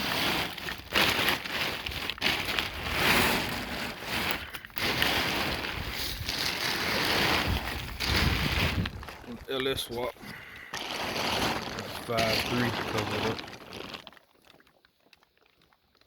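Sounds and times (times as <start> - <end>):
rushing noise on microphone: 2.8 - 9.1.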